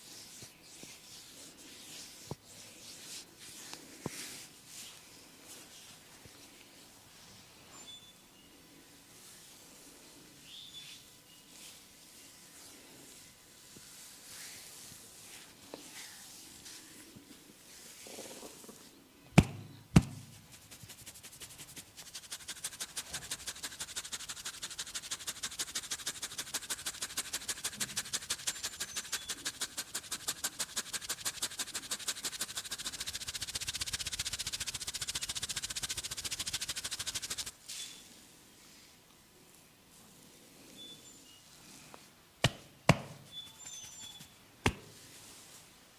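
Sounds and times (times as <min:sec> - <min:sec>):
hands tapping head in massage: 0:19.4 - 0:20.4, 0:42.4 - 0:43.3, 0:44.6 - 0:44.9.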